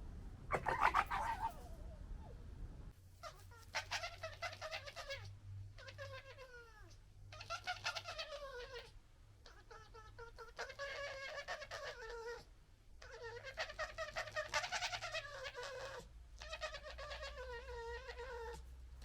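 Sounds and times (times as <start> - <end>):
foxes calling: 0.5 - 2.0, 7.4 - 8.9, 13.1 - 18.6.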